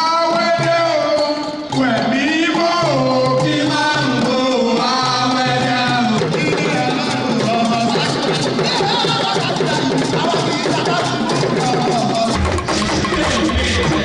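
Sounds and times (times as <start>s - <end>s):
person singing: 0.0s - 14.0s
instrumental music: 12.2s - 14.0s.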